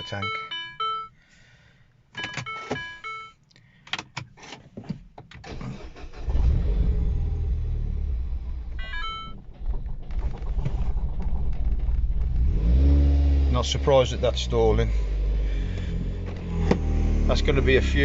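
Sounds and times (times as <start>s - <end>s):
dashboard warning chimes: 0.0s - 1.2s, 2.2s - 3.4s, 8.8s - 9.4s
car starter cranking: 5.4s - 13.6s
car engine running unevenly: 6.8s - 18.0s.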